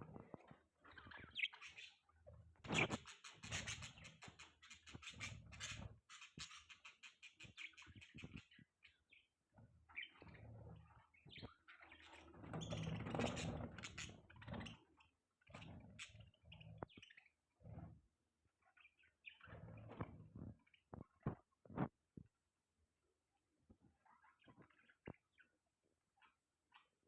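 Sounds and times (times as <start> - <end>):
budgerigars chirping and chattering: 0.1 - 17.3, 18.6 - 21.3.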